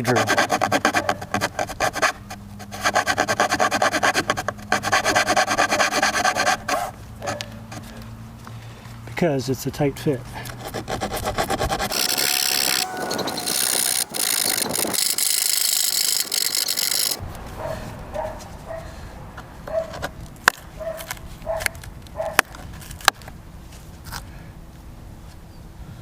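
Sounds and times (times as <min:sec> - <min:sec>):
hacksaw rasping through wood: 0:00.0 - 0:06.9, 0:10.6 - 0:17.2.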